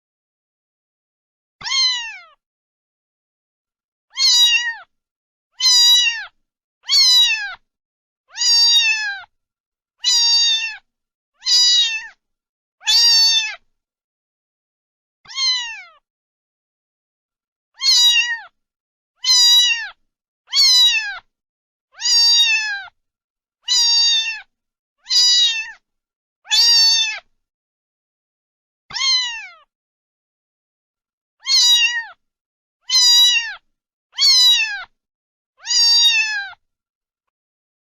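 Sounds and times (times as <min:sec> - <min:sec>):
cat meowing: 0:01.6 - 0:02.4, 0:04.1 - 0:04.9, 0:05.6 - 0:07.6, 0:08.3 - 0:09.3, 0:10.0 - 0:12.2, 0:12.8 - 0:13.6, 0:15.3 - 0:16.0, 0:17.8 - 0:18.6, 0:19.2 - 0:21.3, 0:22.0 - 0:23.0, 0:23.6 - 0:25.8, 0:26.5 - 0:27.3, 0:28.9 - 0:29.7, 0:31.4 - 0:32.2, 0:32.8 - 0:35.0, 0:35.6 - 0:36.6.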